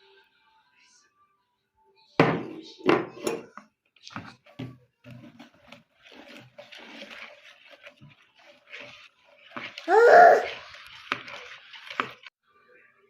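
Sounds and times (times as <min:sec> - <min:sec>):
kitchen utensils and bowls clinking: 0:02.2 - 0:12.3
child crying out: 0:09.9 - 0:10.6.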